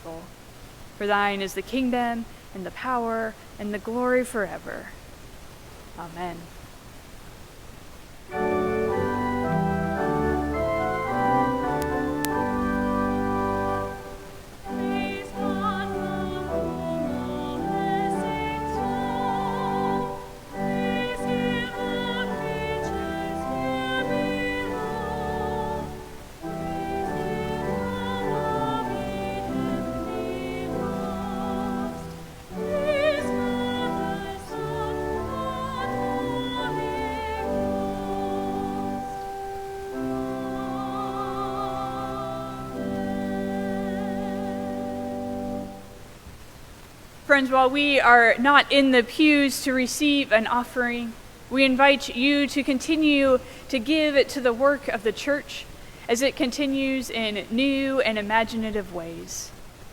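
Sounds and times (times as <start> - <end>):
keyboard accompaniment: 8.3 - 46.2
solo voice singing with vibrato: 13.8 - 46.0.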